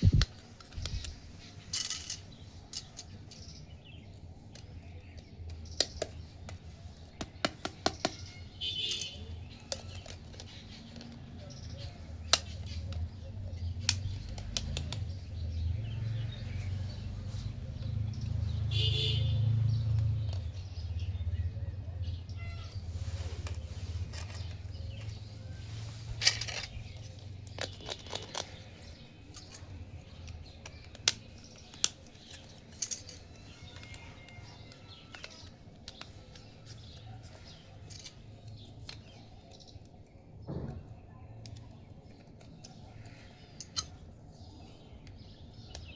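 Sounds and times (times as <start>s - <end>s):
plastic toy pieces clicking: 26.2s - 36.8s.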